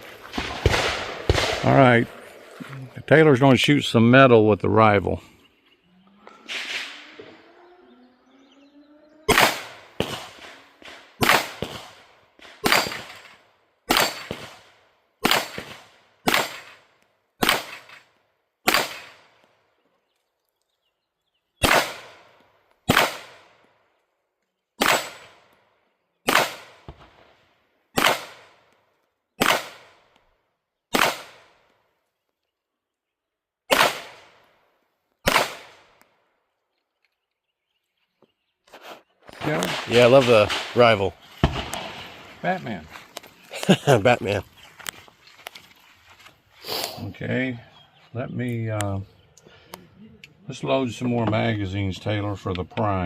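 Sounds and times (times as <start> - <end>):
pistol shots: 0.2 - 2.0, 9.3 - 18.0, 18.6 - 19.4, 21.6 - 23.6, 24.8 - 25.6, 26.2 - 27.2, 27.9 - 28.7, 29.4 - 30.2, 30.9 - 31.7, 33.7 - 34.5, 35.2 - 36.0, 39.4 - 42.4.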